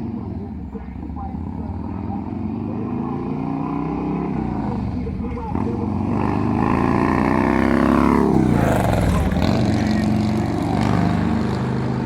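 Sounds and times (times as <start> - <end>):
traffic engine noise: 0.0 - 12.0.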